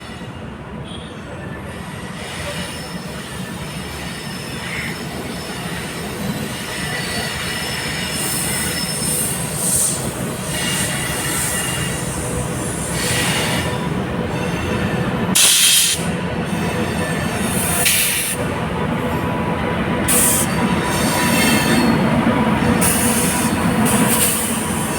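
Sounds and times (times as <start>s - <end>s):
train coaches rumbling: 0.0s - 24.9s
wheel squeals: 2.1s - 15.3s
loud shrill screech: 4.1s - 13.8s.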